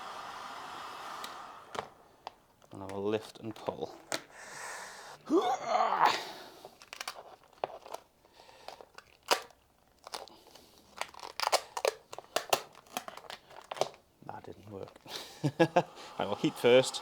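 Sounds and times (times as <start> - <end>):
vinyl film crinkling: 6.6 - 15.6.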